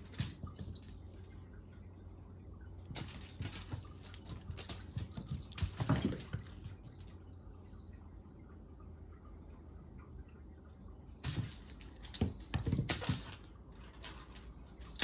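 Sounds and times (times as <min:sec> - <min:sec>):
cats scrabbling and tapping: 0:00.0 - 0:01.0, 0:02.8 - 0:07.2, 0:11.2 - 0:15.0.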